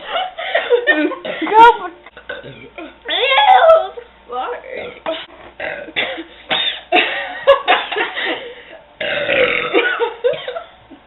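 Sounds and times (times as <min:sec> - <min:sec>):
girl burping: 0:02.2 - 0:03.6, 0:05.0 - 0:06.2, 0:09.0 - 0:10.0.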